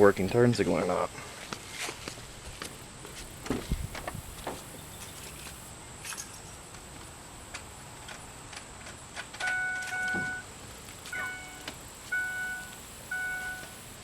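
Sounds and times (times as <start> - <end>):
turn signal flasher ticking: 10.8 - 14.0
electronic warning chime: 11.1 - 14.0.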